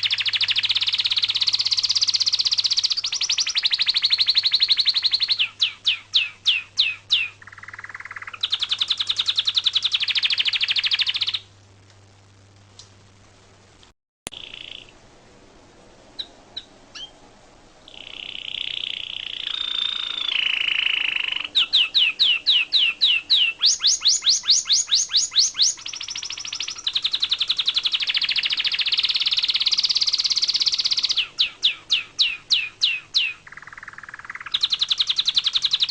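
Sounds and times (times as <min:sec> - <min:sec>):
songbird chirping and trilling: 0:00.0 - 0:11.5, 0:14.3 - 0:15.0, 0:16.1 - 0:17.2, 0:17.8 - 0:35.9.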